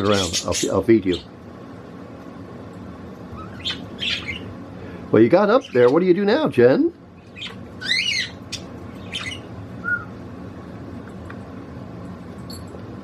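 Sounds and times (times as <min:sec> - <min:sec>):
steady low hum: 0:00.0 - 0:13.0
budgie squawk: 0:03.4 - 0:04.5, 0:07.3 - 0:09.5.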